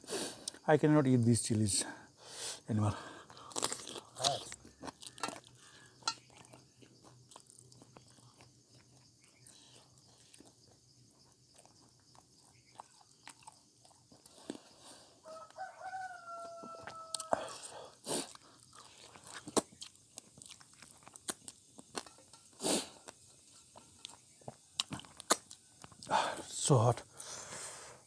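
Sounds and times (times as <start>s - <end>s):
person chewing and crunching: 3.2s - 15.6s, 16.8s - 26.2s
faint rooster crowing: 4.6s - 5.4s, 15.2s - 17.9s.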